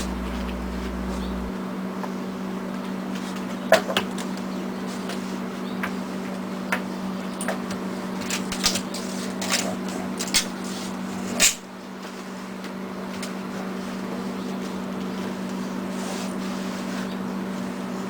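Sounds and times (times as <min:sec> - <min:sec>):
refrigerator humming: 0:00.0 - 0:01.6.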